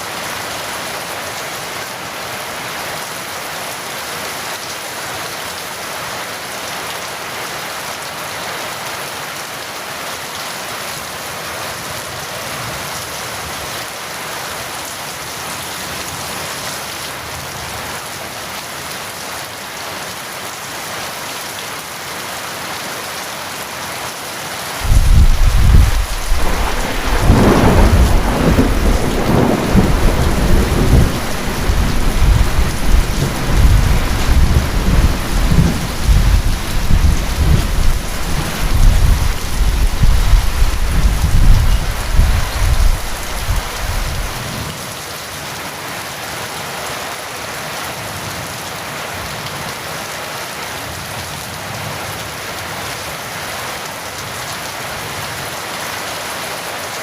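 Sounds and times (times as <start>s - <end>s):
heavy rain: 0.0s - 57.0s
thunder rumbling: 24.8s - 44.6s.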